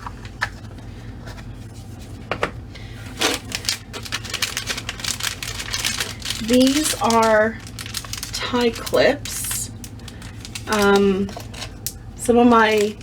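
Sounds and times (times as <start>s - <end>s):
packaging crinkling and clicking: 3.1s - 12.0s, 12.6s - 13.0s.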